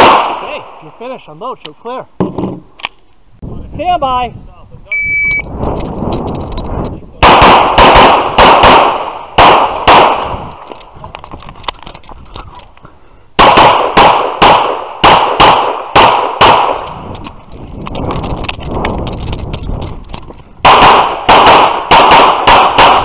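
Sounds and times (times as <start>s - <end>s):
pistol shots: 0.0s - 0.7s, 7.2s - 10.5s, 13.4s - 17.0s, 20.6s - 23.0s
shot timer beep: 4.9s - 5.5s.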